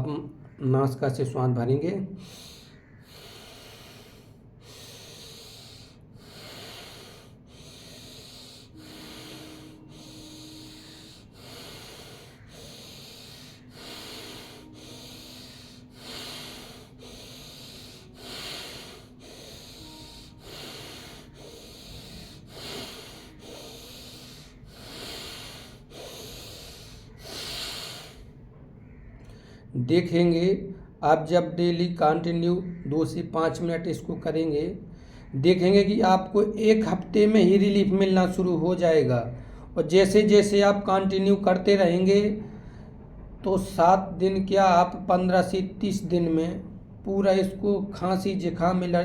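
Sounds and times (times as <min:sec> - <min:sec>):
forceful breathing through nose: 0:02.2 - 0:28.4.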